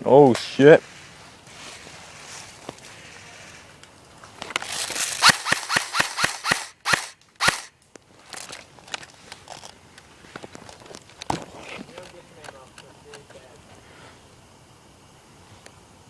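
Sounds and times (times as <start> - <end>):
airsoft guns firing: 4.7 - 7.7.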